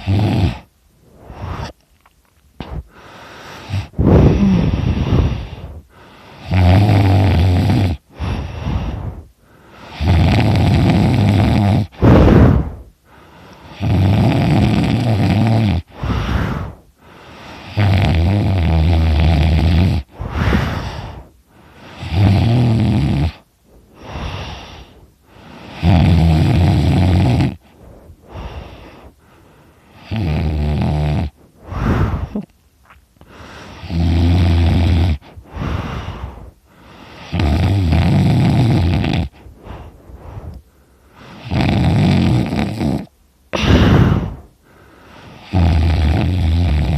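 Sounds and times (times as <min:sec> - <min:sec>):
person snoring loudly: 0:00.0 - 0:01.8, 0:02.6 - 0:05.8, 0:06.4 - 0:09.2, 0:09.9 - 0:12.9, 0:13.6 - 0:16.8, 0:17.6 - 0:21.2, 0:22.0 - 0:23.4, 0:25.6 - 0:27.7, 0:29.9 - 0:32.5, 0:33.8 - 0:36.4, 0:37.2 - 0:40.6, 0:41.4 - 0:44.5, 0:45.4 - 0:46.9
quiet breaths: 0:00.0 - 0:46.9.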